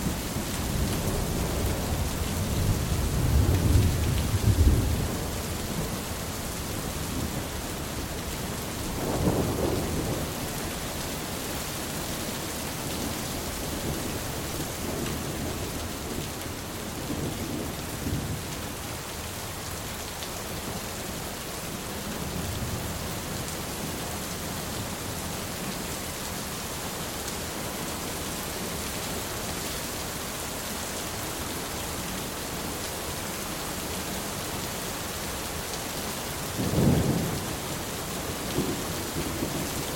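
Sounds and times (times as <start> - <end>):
heavy rain hissing: 0.0 - 19.6.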